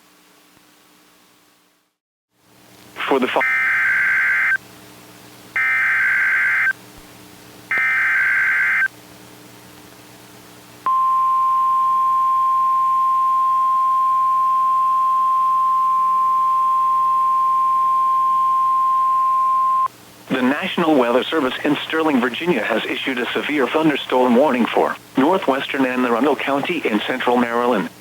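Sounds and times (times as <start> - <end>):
faint hum: 0.0 - 28.0
buzzy warbling data tones: 3.2 - 4.6, 5.6 - 6.7, 7.7 - 8.9
steady warning alarm tone: 3.4 - 4.6, 5.6 - 6.8, 7.7 - 8.9, 10.9 - 19.9.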